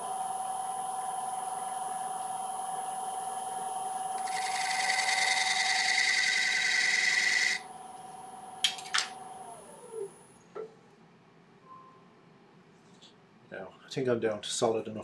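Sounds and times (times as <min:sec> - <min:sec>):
wood lathe motor whine: 0:04.1 - 0:07.7
turning tool cutting wood: 0:04.2 - 0:07.6.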